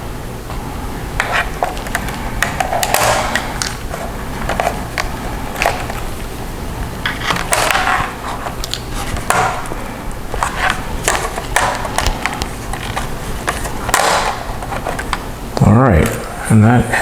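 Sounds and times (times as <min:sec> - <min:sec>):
plastic trim being pried off: 0:10.4 - 0:15.2.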